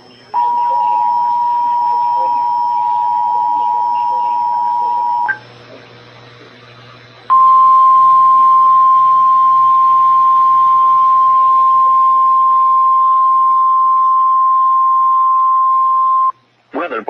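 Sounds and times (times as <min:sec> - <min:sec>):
faint radio hum: 0:00.0 - 0:17.0
steady high alert beep tone: 0:00.4 - 0:05.4, 0:07.3 - 0:16.3.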